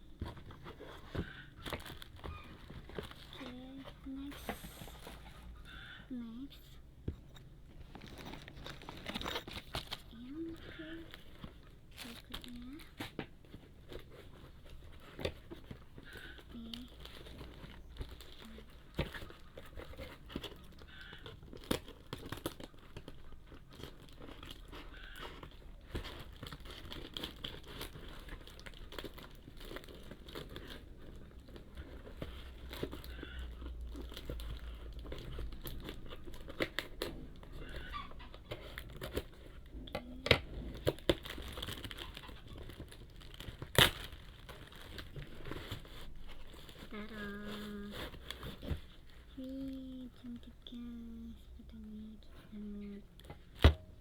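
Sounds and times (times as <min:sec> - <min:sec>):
packaging crinkling and tearing: 0:00.0 - 0:05.9, 0:07.7 - 0:49.8.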